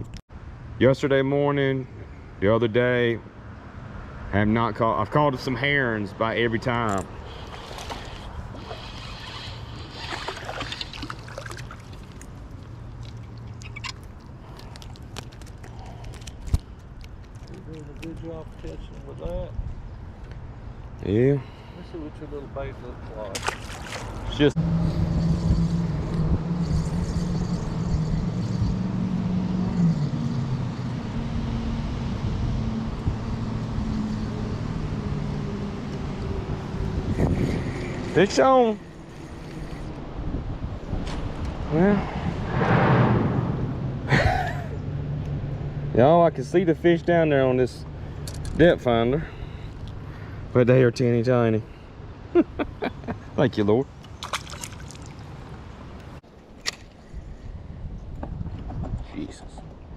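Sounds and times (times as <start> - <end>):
water splashing and trickling: 6.8 - 19.2, 23.2 - 24.6, 53.9 - 57.1
low hum: 38.8 - 46.7.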